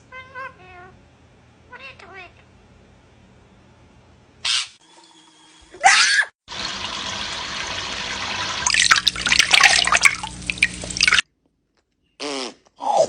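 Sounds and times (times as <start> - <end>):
running water splashing: 6.5 - 11.2.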